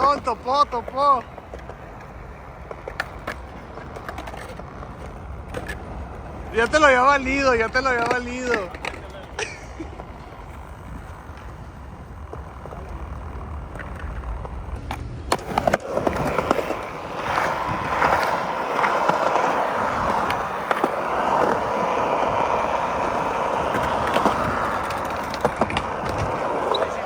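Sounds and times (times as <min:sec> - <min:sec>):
skateboard clacks: 0:00.0 - 0:27.0
skateboard wheels rolling on pavement: 0:00.0 - 0:27.0.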